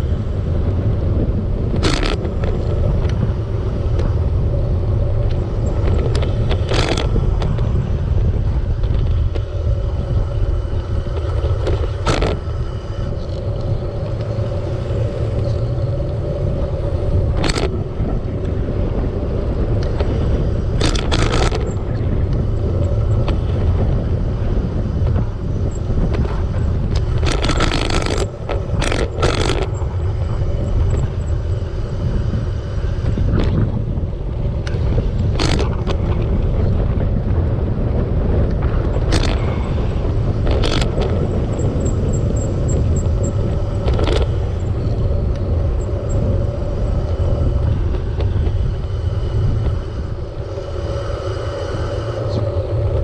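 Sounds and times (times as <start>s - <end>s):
wind and road noise: 0.0s - 53.0s.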